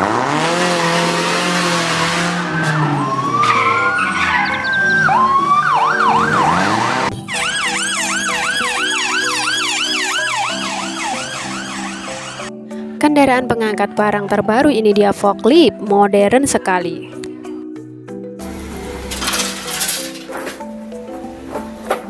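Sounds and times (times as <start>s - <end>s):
children's background music: 0.0s - 22.0s
police siren yelping: 0.5s - 12.6s.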